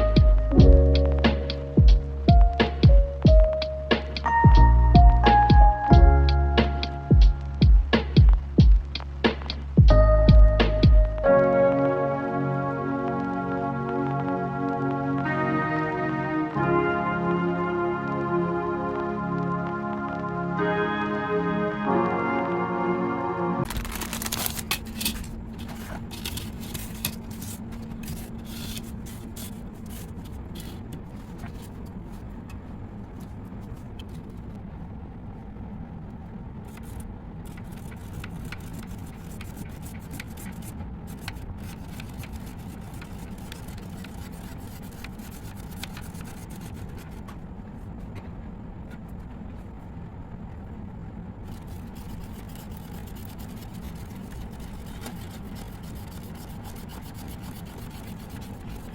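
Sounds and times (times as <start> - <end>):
pen scratching on paper: 36.7 - 47.2, 51.5 - 58.9.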